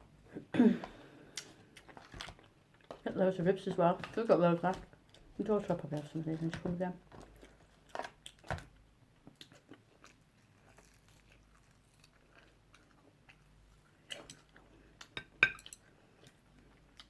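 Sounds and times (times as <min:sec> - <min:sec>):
person chewing food: 0:00.8 - 0:03.0, 0:07.1 - 0:17.0.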